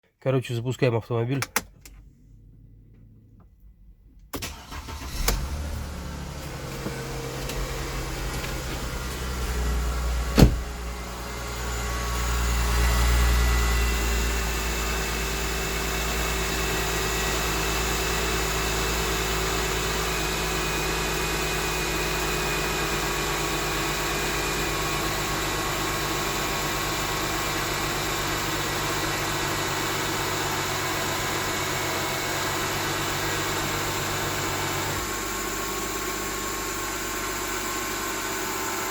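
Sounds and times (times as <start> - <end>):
car engine idling: 1.5 - 38.9.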